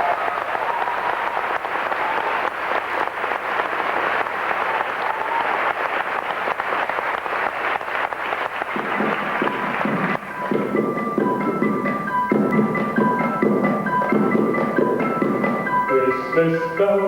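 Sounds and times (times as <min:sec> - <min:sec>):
people cheering: 0:00.0 - 0:10.5
audience clapping: 0:00.0 - 0:15.9.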